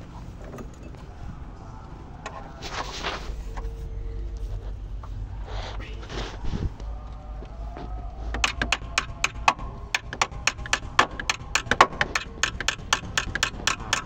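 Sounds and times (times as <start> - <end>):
wrench clicking: 8.4 - 14.0.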